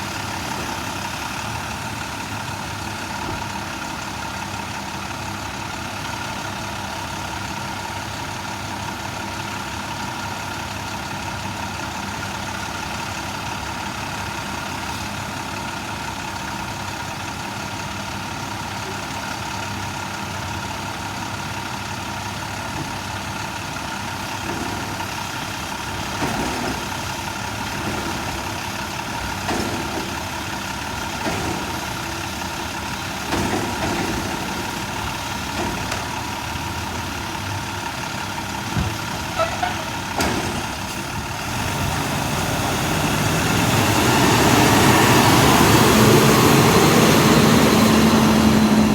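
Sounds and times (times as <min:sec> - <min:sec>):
garbage truck engine idling: 0:00.0 - 0:48.9
clunks and rattles: 0:22.2 - 0:48.9.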